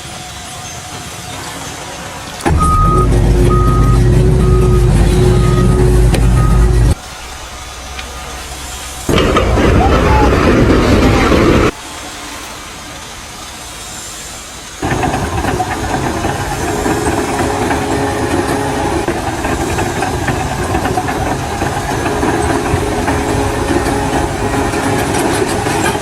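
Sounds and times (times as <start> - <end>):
engine hum: 1.6 - 26.0
machinery hiss: 6.8 - 26.0.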